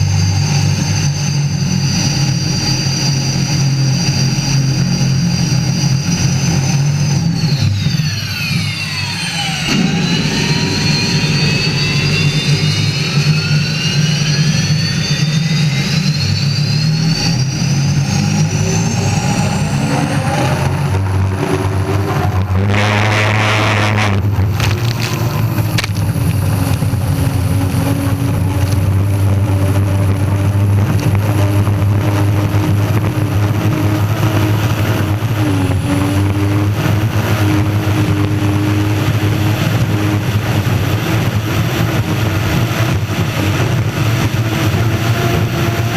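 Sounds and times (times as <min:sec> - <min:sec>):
deep drone: 0:00.0 - 0:45.9
gas turbine engine whine: 0:00.0 - 0:45.9
brief rushing noise: 0:07.7 - 0:15.2.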